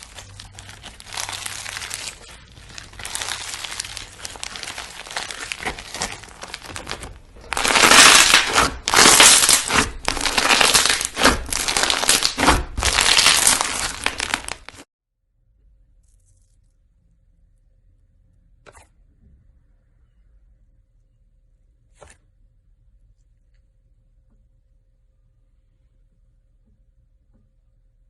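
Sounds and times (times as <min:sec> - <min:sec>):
slime being squeezed by hand: 0:00.0 - 0:14.8.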